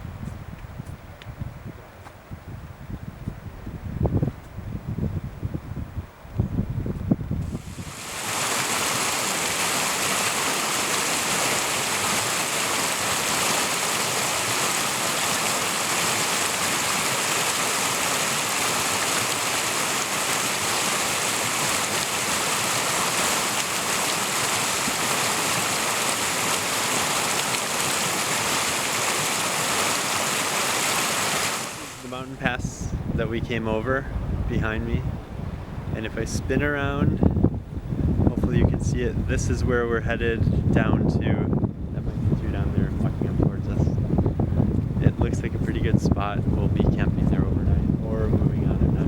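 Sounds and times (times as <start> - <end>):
stream water rushing: 7.5 - 32.6.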